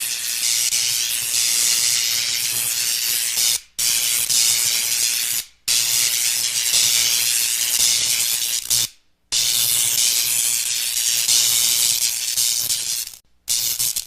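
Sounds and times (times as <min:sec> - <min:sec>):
electrical buzzing hiss: 0:09.4 - 0:14.0.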